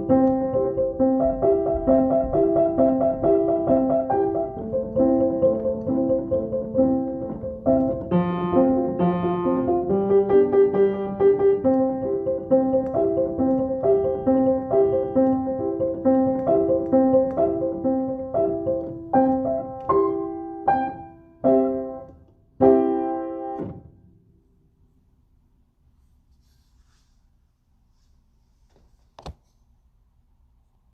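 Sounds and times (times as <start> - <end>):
piano music: 0.0 - 23.9.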